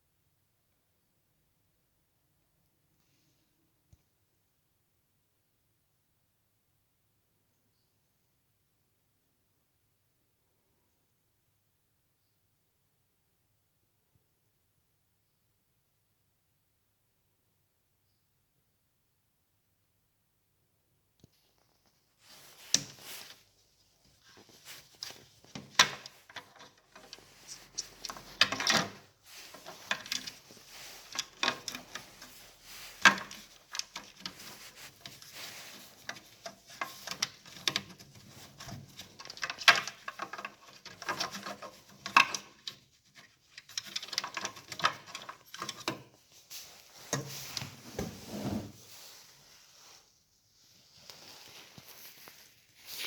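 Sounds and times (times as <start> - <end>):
objects handled by hand: 21.2 - 53.0.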